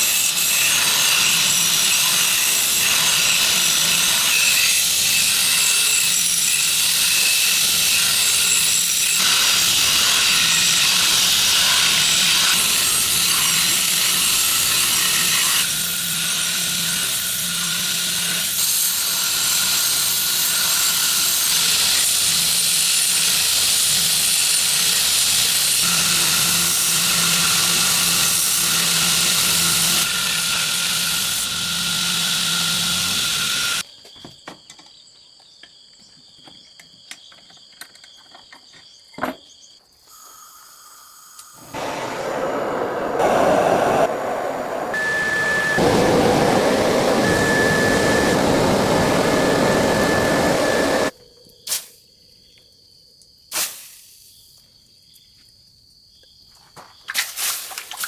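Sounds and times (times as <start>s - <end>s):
power grinder grinding steel: 0.0s - 33.8s, 45.0s - 51.1s.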